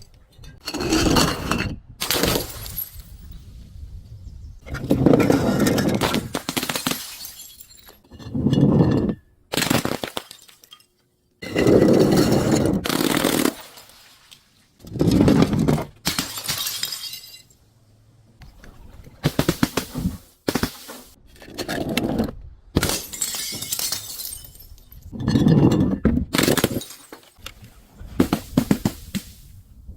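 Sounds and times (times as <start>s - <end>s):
glass bottles crushing and shattering: 0.4s - 3.4s, 4.8s - 14.0s, 14.9s - 17.6s, 22.8s - 27.4s.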